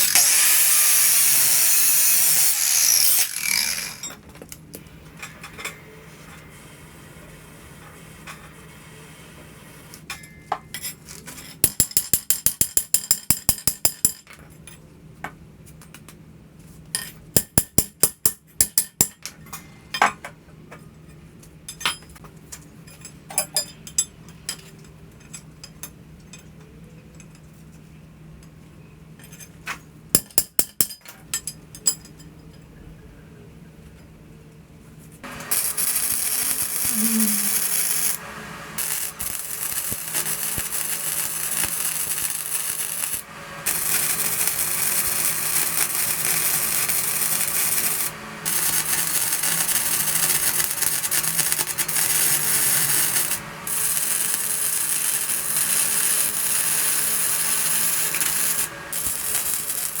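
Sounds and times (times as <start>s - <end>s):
harsh abrasive grinding: 0.0s - 4.1s.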